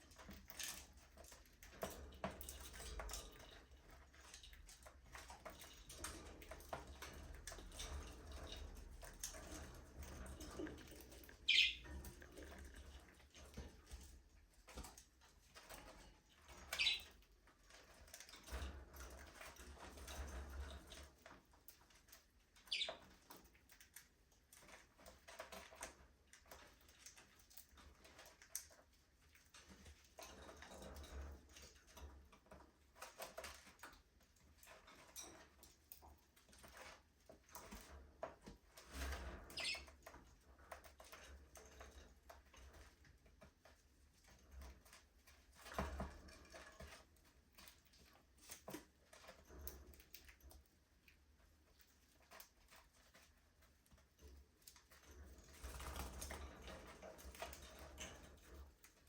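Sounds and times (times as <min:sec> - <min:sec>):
birds clicking and scratching: 0:00.0 - 0:59.0
budgerigar chirps: 0:11.5 - 0:11.8.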